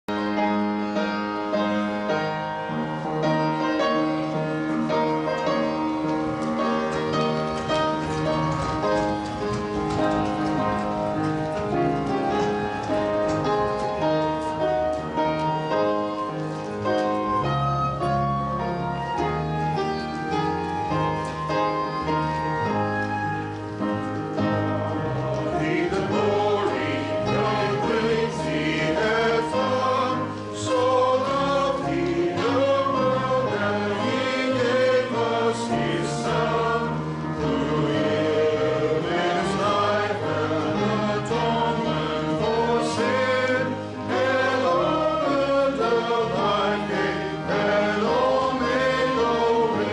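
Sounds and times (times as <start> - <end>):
piano or organ chords: 0.1 - 49.9
choir singing a hymn: 24.5 - 49.9.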